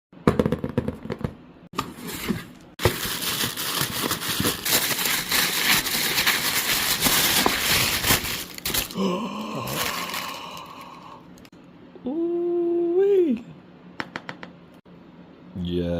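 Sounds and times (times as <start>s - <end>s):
packaging rustling and tearing: 2.1s - 10.8s.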